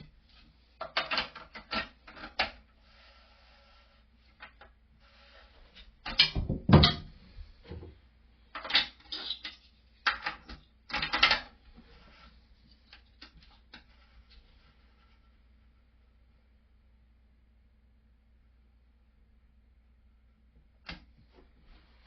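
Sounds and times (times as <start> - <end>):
toilet-tank parts knocking: 6.0 - 7.2.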